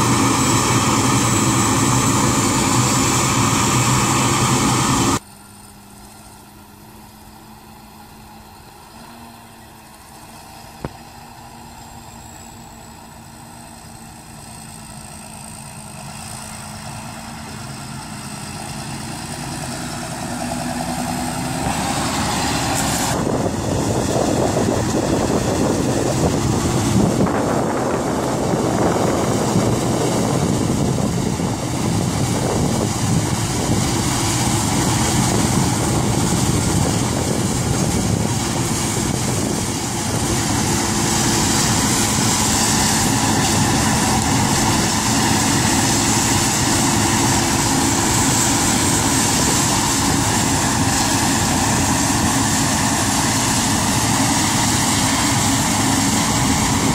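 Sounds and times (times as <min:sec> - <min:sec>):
heavy machinery engine running: 0:00.0 - 0:56.9
machine engine approaching: 0:00.0 - 0:56.9.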